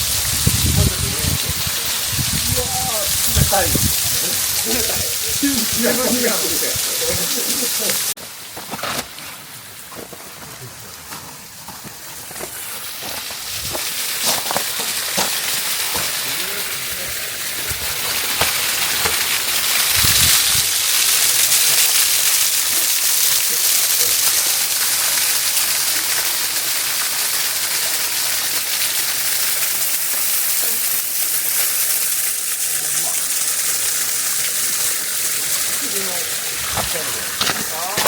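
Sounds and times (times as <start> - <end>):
waterfall rushing and splashing: 0.0 - 8.5, 11.9 - 38.0.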